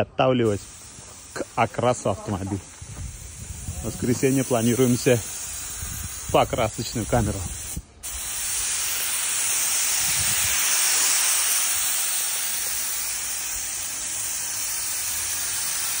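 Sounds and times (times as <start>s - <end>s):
spray gun hissing: 0.4s - 16.0s.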